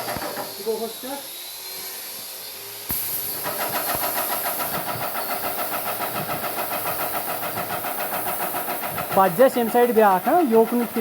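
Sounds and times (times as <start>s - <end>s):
spray hissing from gun: 1.8s - 11.0s
paint sprayer pump pulsing: 2.9s - 11.0s.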